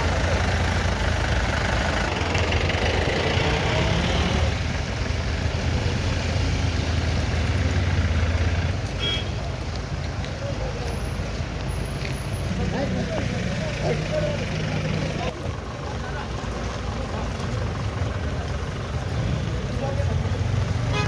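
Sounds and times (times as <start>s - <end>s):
vehicle engine running: 0.0s - 6.4s.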